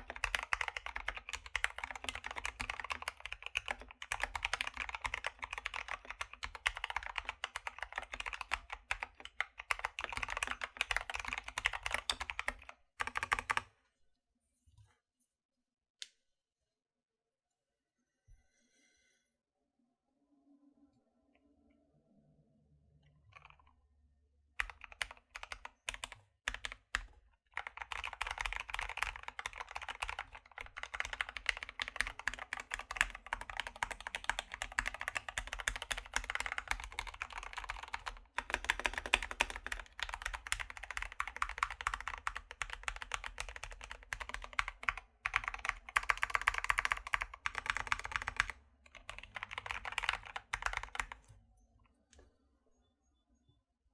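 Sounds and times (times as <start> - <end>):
mechanical keyboard typing: 0.0 - 13.7, 23.3 - 23.6, 24.6 - 51.3.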